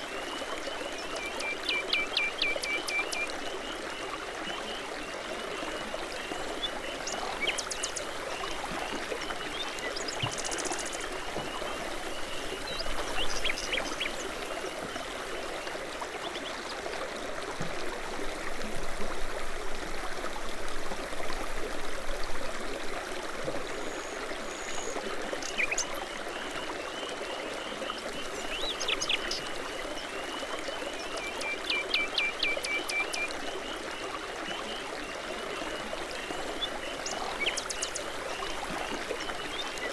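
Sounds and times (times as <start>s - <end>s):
songbirds chirping: 0.0s - 16.8s, 24.7s - 39.9s
running trickling water: 0.0s - 39.9s.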